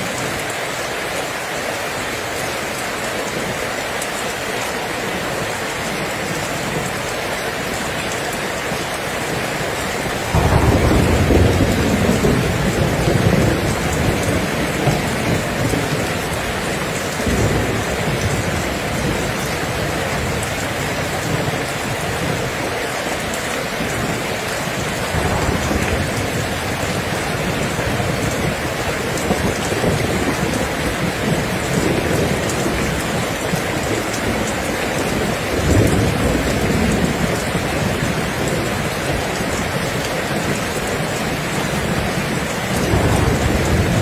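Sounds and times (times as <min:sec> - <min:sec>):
heavy rain falling: 0:00.0 - 0:44.0
thunder rolling: 0:10.0 - 0:21.5, 0:24.8 - 0:39.4, 0:42.7 - 0:44.0.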